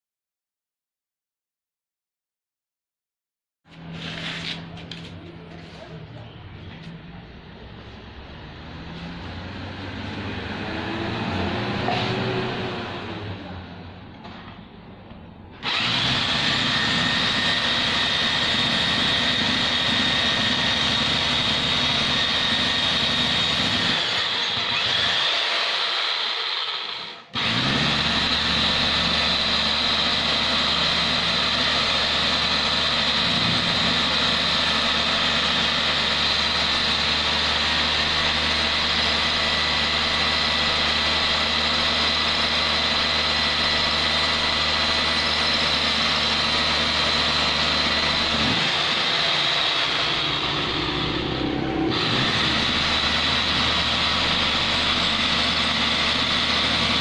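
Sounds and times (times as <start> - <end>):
electric concrete drill whining: 15.6 - 57.0.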